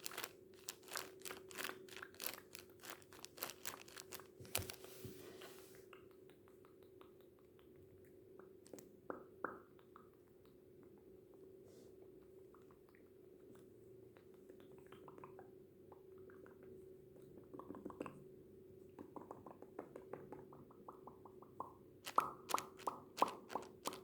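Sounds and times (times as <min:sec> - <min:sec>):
tissue paper popping and clicking: 0:00.0 - 0:05.0, 0:22.1 - 0:24.0.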